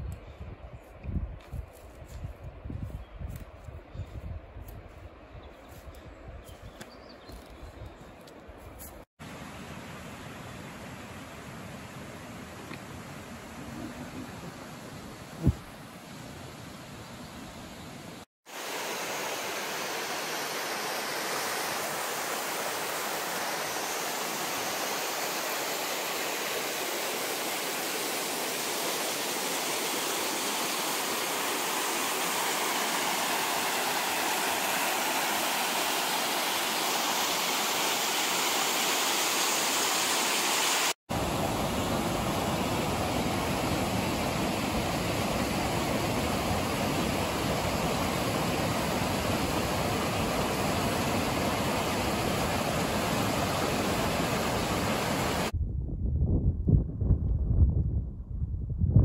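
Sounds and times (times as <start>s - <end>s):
rushing stream water: 17.8s - 55.5s.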